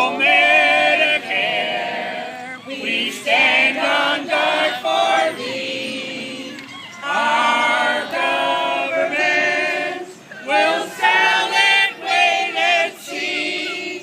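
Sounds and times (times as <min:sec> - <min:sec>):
group singing without instruments: 0:00.0 - 0:14.0.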